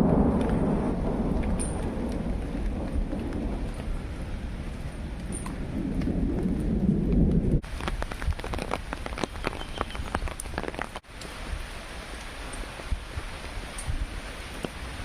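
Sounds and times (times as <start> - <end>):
low rumble of thunder: 0.0 - 7.6
raindrops ticking on hard surface: 0.0 - 15.0
steady rain: 0.0 - 15.0.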